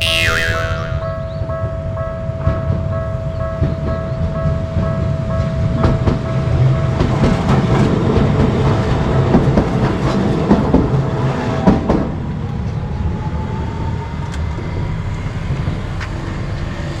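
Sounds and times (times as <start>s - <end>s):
train wheels clattering over rail joints: 5.4s - 12.2s.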